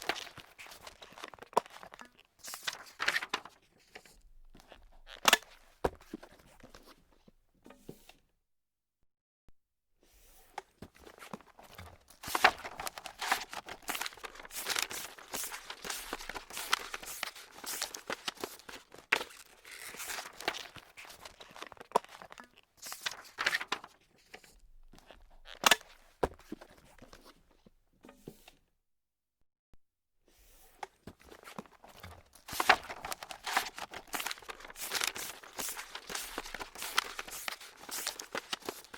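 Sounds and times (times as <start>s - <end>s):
paper crumpling: 2.5s - 3.5s, 11.0s - 24.0s, 31.3s - 38.9s.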